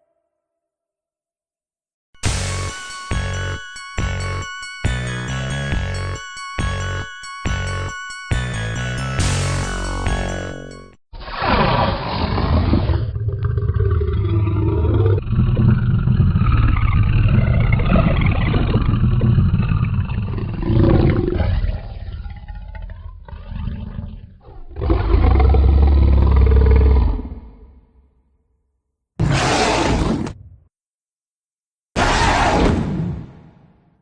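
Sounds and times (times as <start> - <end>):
dinosaur growl: 11.2 - 27.9
dinosaur roar: 11.2 - 27.9, 29.2 - 30.4.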